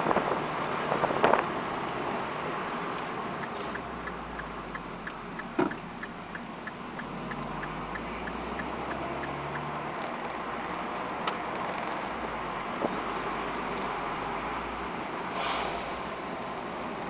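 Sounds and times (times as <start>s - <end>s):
car engine idling: 0.0s - 17.0s
turn signal clicking: 2.8s - 12.0s.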